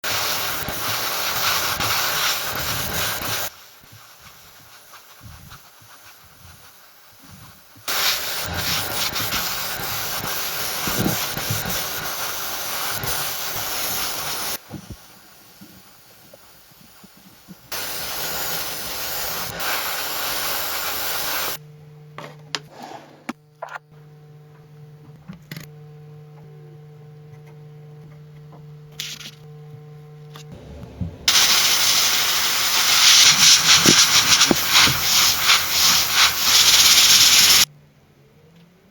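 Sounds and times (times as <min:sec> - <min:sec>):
loud hissing rubbing: 0:00.0 - 0:21.6, 0:31.3 - 0:37.7
steady low hum: 0:21.6 - 0:31.5.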